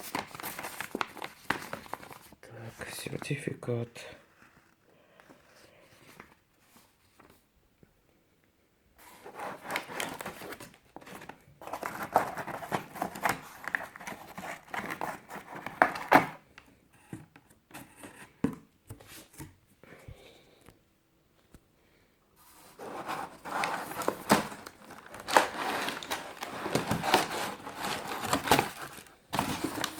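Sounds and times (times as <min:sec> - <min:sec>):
wrapping rustling and tearing: 0:00.0 - 0:02.4, 0:09.0 - 0:16.4, 0:22.5 - 0:29.9.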